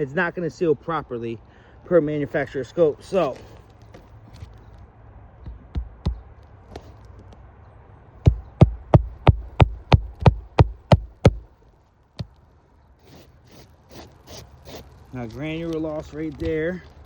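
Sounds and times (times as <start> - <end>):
hammer driving nails into shingle: 8.3 - 11.5.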